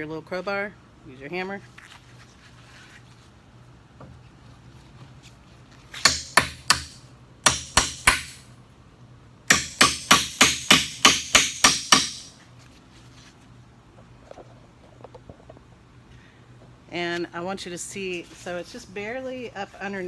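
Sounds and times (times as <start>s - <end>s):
hammer striking a crowbar: 6.0s - 8.5s, 9.5s - 12.3s.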